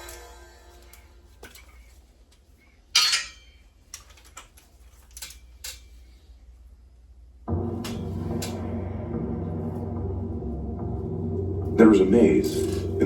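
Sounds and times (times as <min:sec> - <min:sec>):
metal tools and parts clanking: 0:02.9 - 0:06.1.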